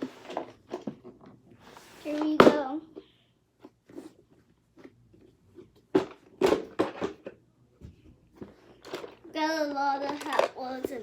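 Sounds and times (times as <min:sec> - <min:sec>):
toys clattering: 0:05.9 - 0:07.4, 0:08.4 - 0:11.0.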